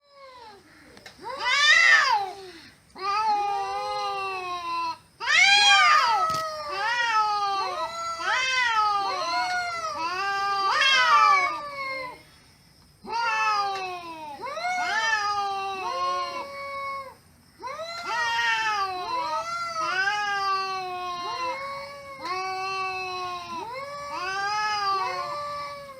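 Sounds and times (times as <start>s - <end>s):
cats meowing: 0.1s - 12.2s, 13.0s - 25.9s.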